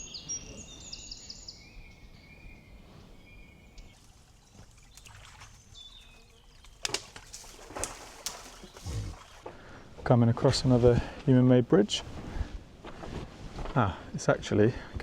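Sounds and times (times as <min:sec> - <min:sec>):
songbirds singing: 0:00.0 - 0:09.8.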